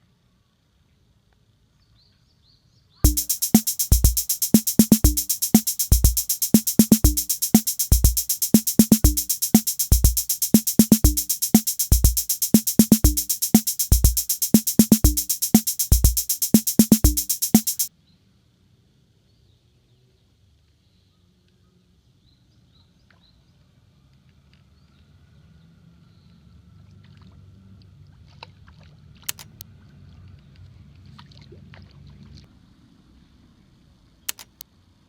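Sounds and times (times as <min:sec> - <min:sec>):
deep kick drums: 0:03.1 - 0:17.9
mid-pitched drum hits: 0:03.1 - 0:17.9
rapid hi-hat: 0:03.1 - 0:17.9.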